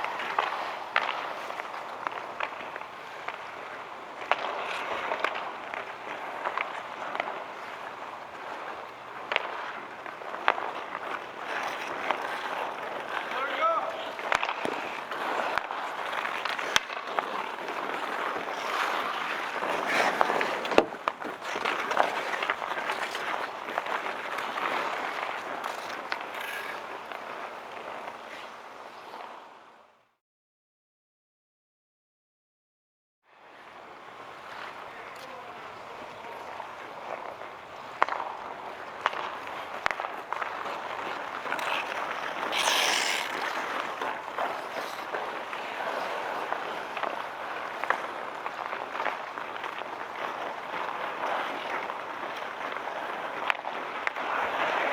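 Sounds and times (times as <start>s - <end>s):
hockey stick hitting puck: 0.0s - 28.0s, 34.2s - 50.2s
skates scraping on ice: 0.0s - 30.1s, 33.3s - 54.9s.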